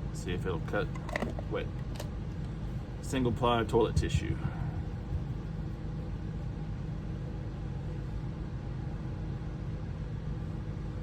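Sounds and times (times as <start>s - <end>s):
low motor hum: 0.0s - 8.7s.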